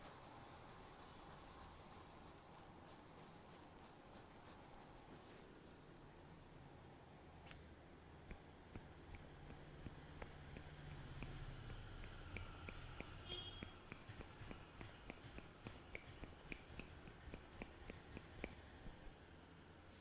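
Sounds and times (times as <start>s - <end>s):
faint low hum: 0.0s - 20.0s
light sharp clicks and snaps: 7.4s - 19.1s.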